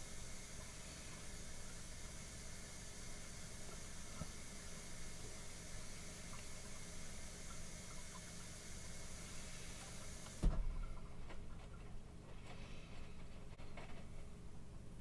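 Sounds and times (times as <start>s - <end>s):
steady hiss: 0.0s - 10.4s.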